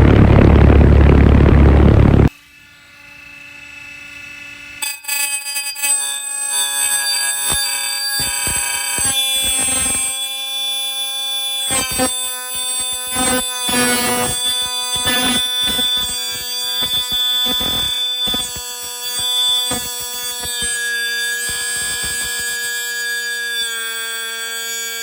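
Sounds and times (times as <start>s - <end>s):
grinding noise bursts: 0.0s - 2.3s
power tool cutting metal: 2.4s - 25.0s.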